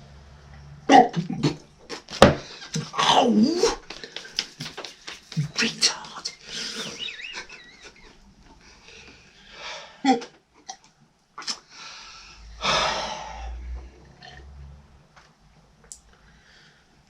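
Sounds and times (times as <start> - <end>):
man hiccuping: 0.9 - 1.7
loud wheezing breath: 11.7 - 14.0.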